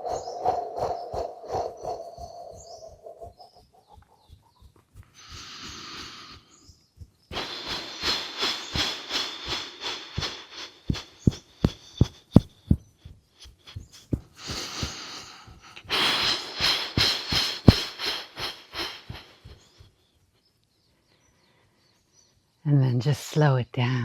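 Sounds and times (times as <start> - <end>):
breathy hissing exhalations: 5.1 - 12.3, 13.8 - 19.7.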